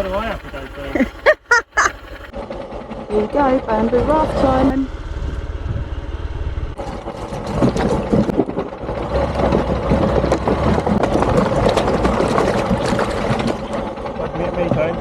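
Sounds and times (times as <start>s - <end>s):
motorcycle engine rumbling: 0.0s - 14.9s
clatter of knocks and rattles: 6.8s - 15.0s.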